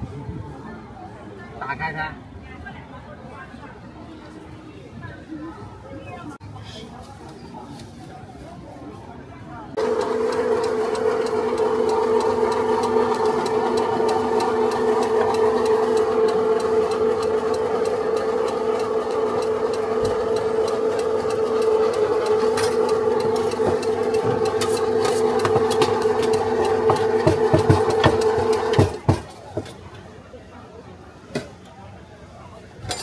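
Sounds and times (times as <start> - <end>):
machine motor humming: 9.8 - 28.9.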